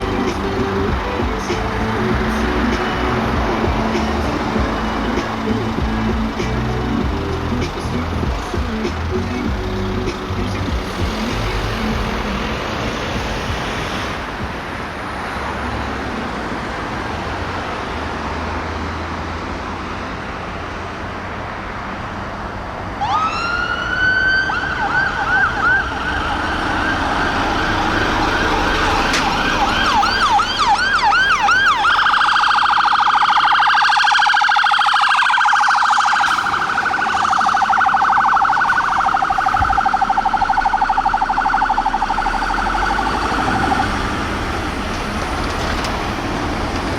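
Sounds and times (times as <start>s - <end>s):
fire engine engine: 0.0s - 46.9s
siren wailing: 23.0s - 44.8s.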